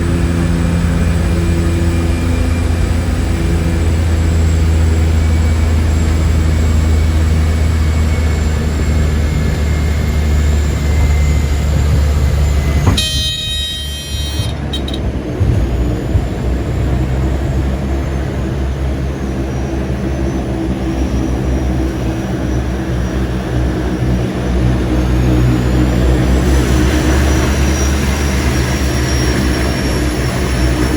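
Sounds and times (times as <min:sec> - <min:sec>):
propeller engines droning: 0:00.0 - 0:30.9
brief high-pitched tone: 0:12.4 - 0:15.0.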